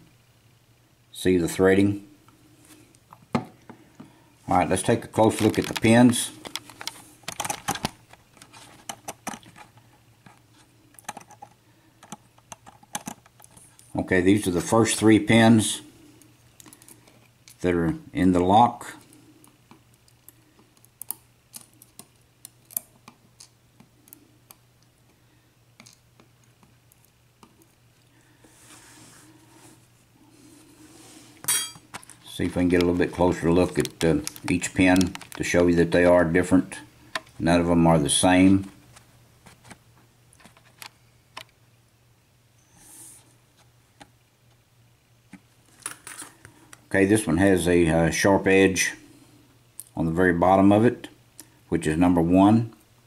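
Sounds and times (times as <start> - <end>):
faint steady hum: 0.0 - 53.0
soft rustle: 28.2 - 31.4.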